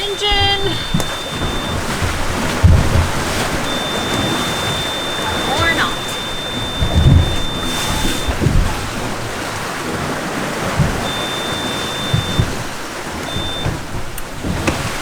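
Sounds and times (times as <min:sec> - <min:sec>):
high electronic alarm beep: 0:00.0 - 0:08.7, 0:11.0 - 0:13.8
wind and water on microphone: 0:00.0 - 0:15.0.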